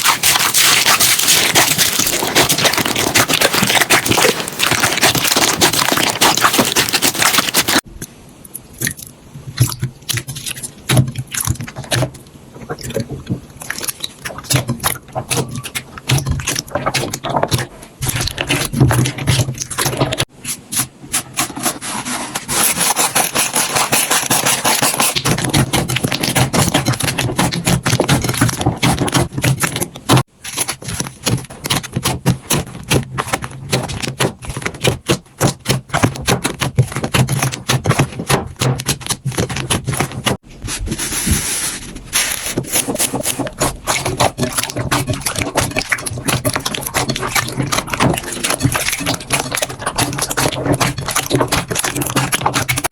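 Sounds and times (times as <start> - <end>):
slime crackling and popping: 0.0 - 7.8, 42.5 - 52.9.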